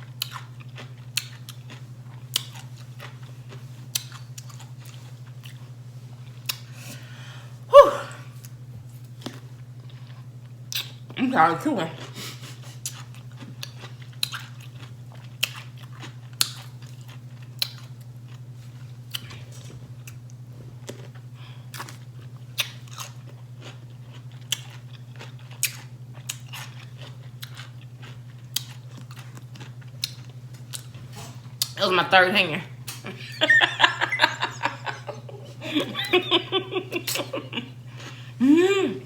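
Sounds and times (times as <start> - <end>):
person chewing crunchy pickles: 0.0 - 6.9, 12.0 - 31.8, 35.8 - 38.4.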